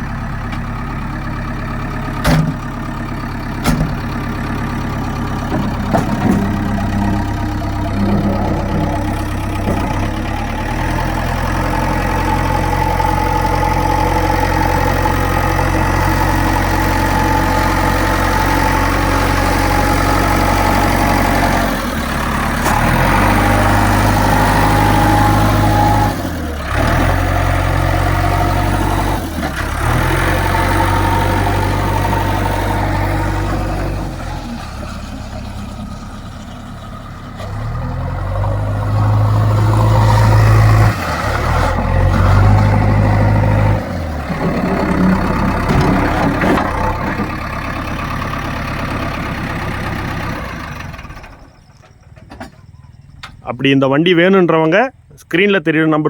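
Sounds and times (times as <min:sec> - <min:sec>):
diesel engine running: 0:00.0 - 0:55.3
sharp knocks: 0:02.2 - 0:02.6, 0:03.6 - 0:04.0.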